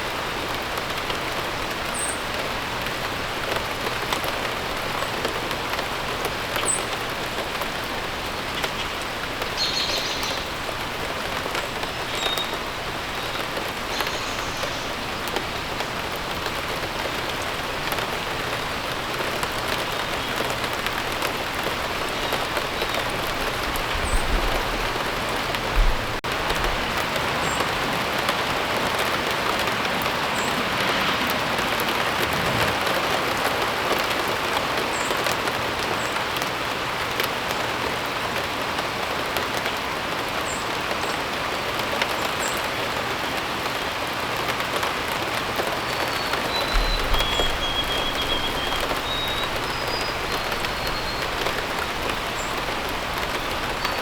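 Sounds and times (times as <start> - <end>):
rain pattering: 0.0 - 54.0.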